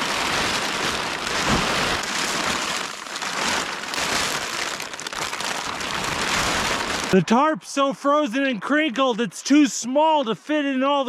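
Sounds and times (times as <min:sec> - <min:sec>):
plastic tarp crinkling: 0:00.0 - 0:07.2.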